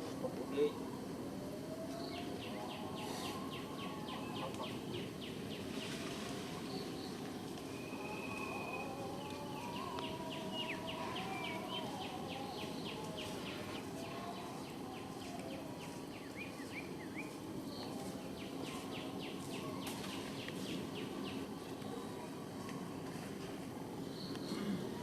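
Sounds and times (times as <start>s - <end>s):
outdoor background hiss: 0.0s - 25.0s
small birds chirping: 8.3s - 21.5s.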